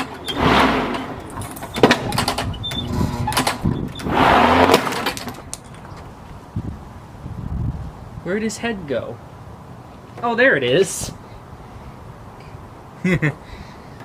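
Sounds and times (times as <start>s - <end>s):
lawn mower running: 0.0s - 5.3s.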